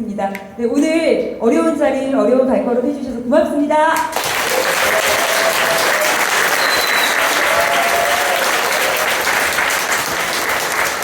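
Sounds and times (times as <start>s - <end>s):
audience applauding: 4.1s - 11.0s.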